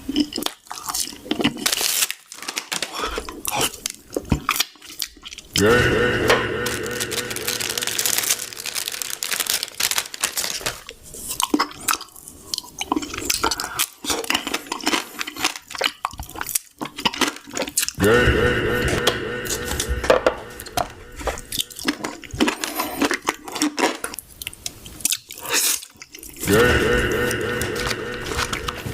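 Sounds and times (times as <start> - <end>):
chips crunching: 0.0 - 18.1, 19.0 - 28.9
chip bag crinkling: 0.1 - 5.6, 6.6 - 18.0, 20.6 - 24.3, 25.0 - 28.9
loud sustained pitched tone: 5.6 - 9.8, 18.0 - 22.2, 26.4 - 28.9.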